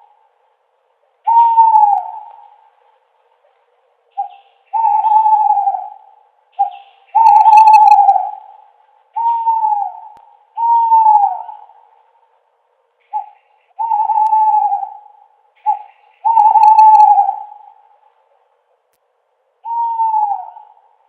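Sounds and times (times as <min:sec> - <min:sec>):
owl hooting: 0:01.2 - 0:02.8, 0:03.9 - 0:12.1, 0:13.0 - 0:18.2, 0:19.6 - 0:21.0.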